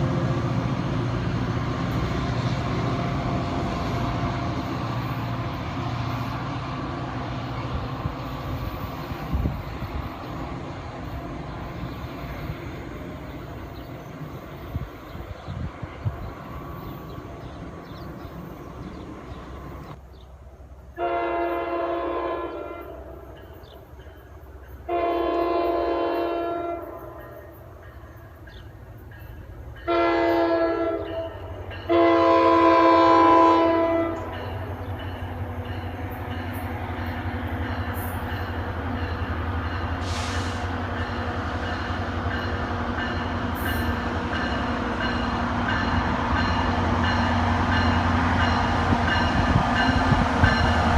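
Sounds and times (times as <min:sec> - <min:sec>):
train running: 0:00.0 - 0:50.9
locomotive horn blasts: 0:21.0 - 0:23.2, 0:24.9 - 0:27.2, 0:29.8 - 0:34.3.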